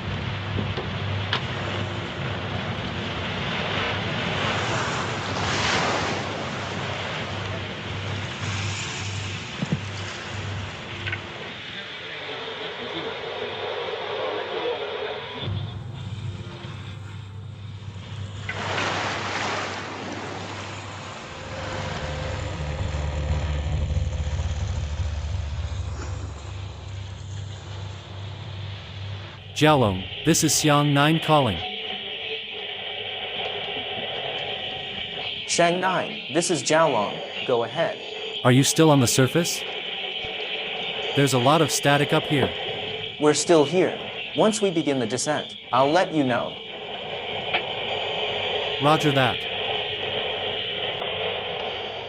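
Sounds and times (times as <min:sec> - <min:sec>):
boat engine rumble: 0:15.6 - 0:29.2
sea waves splashing: 0:18.5 - 0:22.1.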